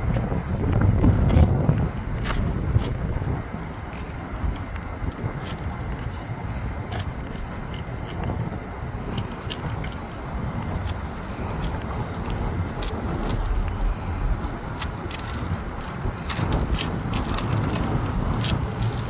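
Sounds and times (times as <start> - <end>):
steady low rumble: 0.0 - 19.0
crackling clicks: 6.9 - 19.0
razor blade scraping adhesive: 9.1 - 19.0.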